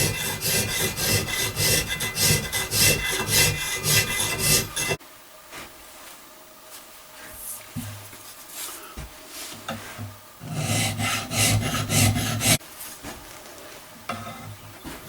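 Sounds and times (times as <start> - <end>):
file scraping steel barrel: 0.0 - 5.0, 10.4 - 12.6, 14.1 - 14.6.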